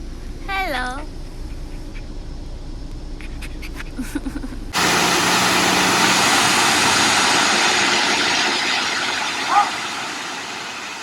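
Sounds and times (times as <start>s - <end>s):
waterfall rushing: 4.8s - 11.0s.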